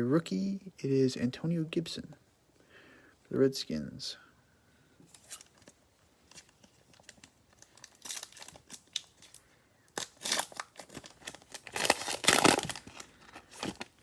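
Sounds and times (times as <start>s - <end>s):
plastic packaging crinkling: 5.1s - 14.0s.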